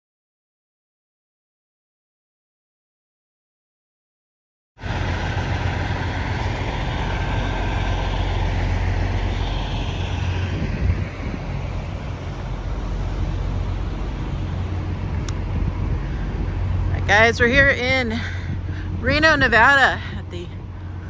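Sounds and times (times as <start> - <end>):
diesel truck engine drone: 4.8 - 21.0.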